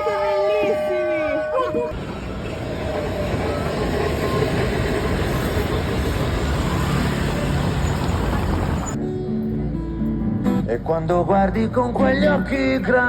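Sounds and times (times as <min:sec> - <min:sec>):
vehicle low rumble: 0:01.7 - 0:11.0.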